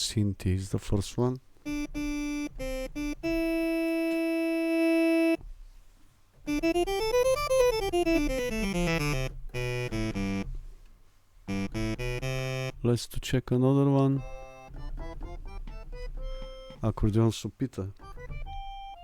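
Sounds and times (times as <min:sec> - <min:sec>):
synth accordion notes: 0:01.6 - 0:05.4, 0:06.4 - 0:10.6, 0:11.5 - 0:12.9, 0:14.1 - 0:17.0, 0:18.0 - 0:19.0.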